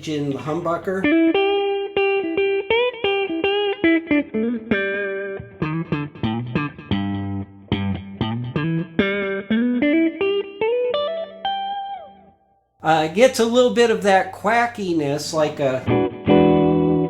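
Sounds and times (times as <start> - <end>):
clean electric guitar melody: 0.8 - 12.6, 15.8 - 17.0.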